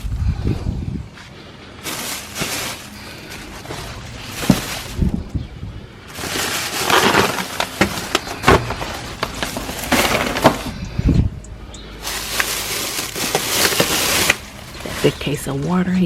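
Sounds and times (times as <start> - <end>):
grocery bags rustling: 1.1 - 16.0.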